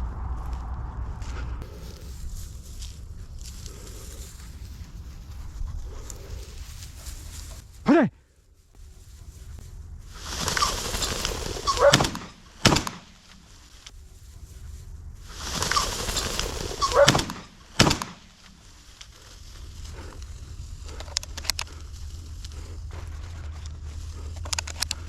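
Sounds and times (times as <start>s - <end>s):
pheasant cackling: 10.4s - 12.2s, 15.6s - 17.3s
shotgun shot: 11.8s - 13.2s, 17.0s - 18.3s.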